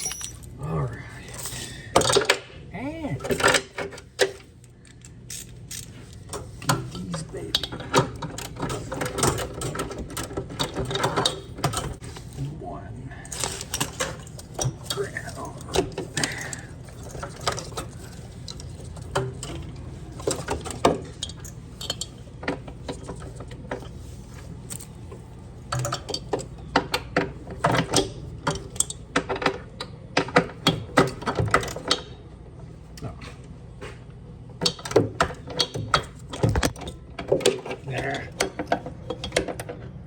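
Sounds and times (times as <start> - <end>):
metal tools clinking on metal: 0.0 - 0.6
steady low hum: 0.0 - 40.0.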